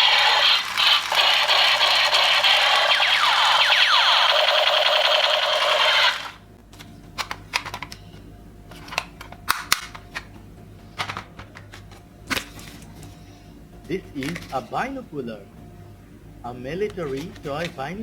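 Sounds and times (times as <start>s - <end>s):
music: 6.6s - 18.0s.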